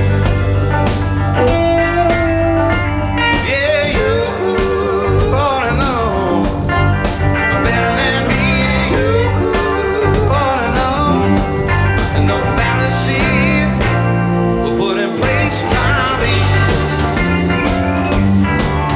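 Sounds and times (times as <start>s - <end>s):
blues-rock band playing: 0.0s - 18.9s
wavering lead melody: 0.0s - 18.9s.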